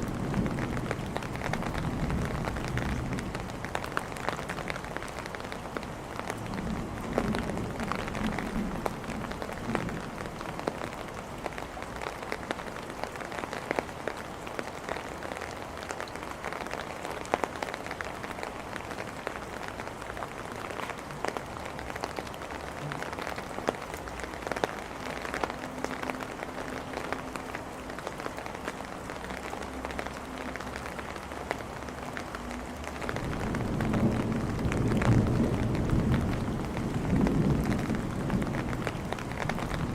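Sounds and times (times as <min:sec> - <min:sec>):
rain on hard surfaces: 0:00.0 - 0:39.9
water drops and drips: 0:00.0 - 0:39.9
low thunder rumble: 0:33.1 - 0:39.9.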